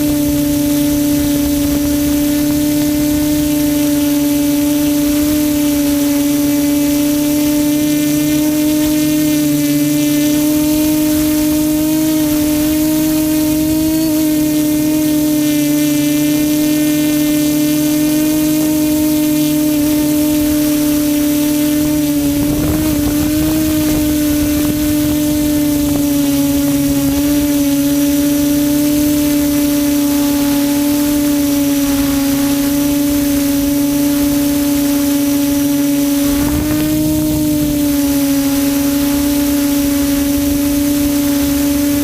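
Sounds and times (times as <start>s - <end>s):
quadcopter motors humming: 0.0s - 42.0s
rush of air: 21.6s - 27.3s, 34.4s - 41.3s.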